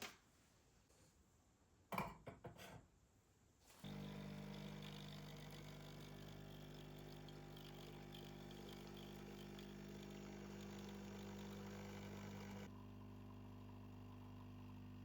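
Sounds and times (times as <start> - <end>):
small motor humming: 3.8 - 12.7.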